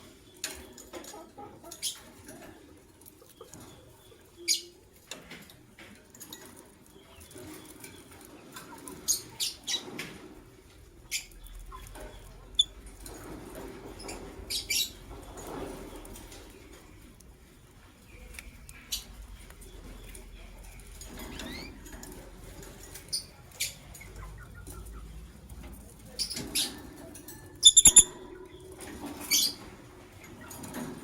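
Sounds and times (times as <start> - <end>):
wings fluttering and rustling: 0.0 - 31.0
lovebirds chirping: 3.2 - 4.8, 27.6 - 29.6.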